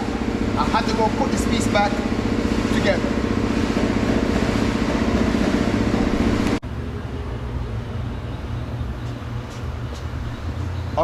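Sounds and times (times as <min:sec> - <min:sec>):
low hum: 0:00.0 - 0:11.0.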